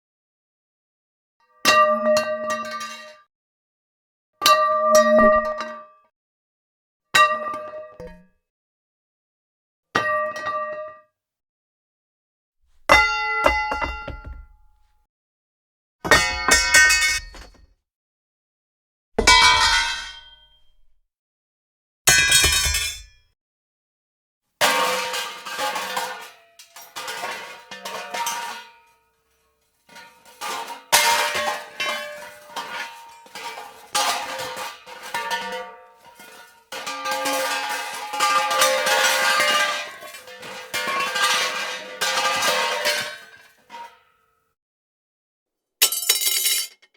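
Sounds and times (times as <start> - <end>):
metal pipe clanging: 12.7 - 14.8, 16.1 - 17.6, 19.2 - 20.9, 22.1 - 23.1
metal pipe clanging on floor: 12.7 - 14.8, 16.1 - 17.6, 19.2 - 20.9, 22.1 - 23.2, 29.9 - 43.9, 45.8 - 46.9.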